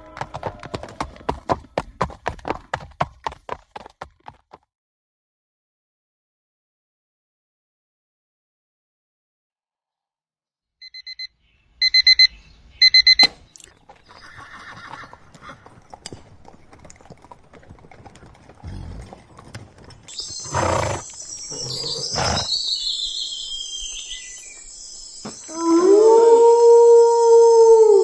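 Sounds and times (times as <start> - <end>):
falling high-pitched animal cry: 25.4 - 28.0
long howl: 25.5 - 28.0.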